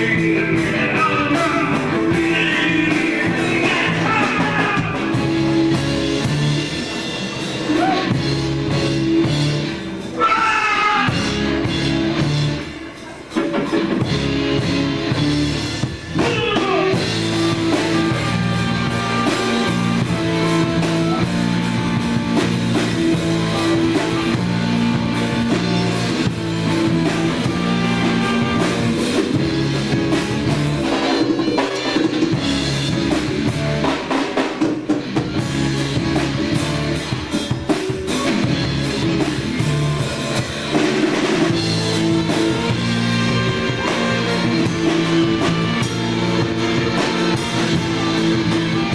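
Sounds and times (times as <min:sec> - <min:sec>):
rock music with drums bass guitar: 0:00.0 - 0:48.9.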